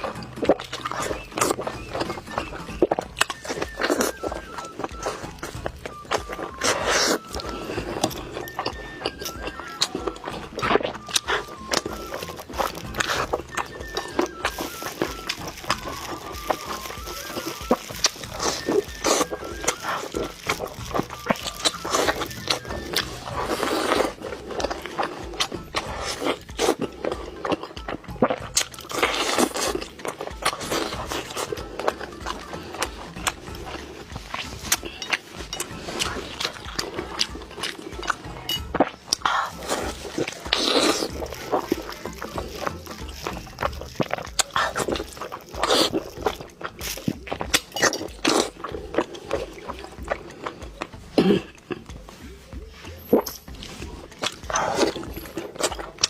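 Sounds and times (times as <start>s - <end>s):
background music: 0.0s - 56.0s
crunching and biting food: 0.0s - 56.0s.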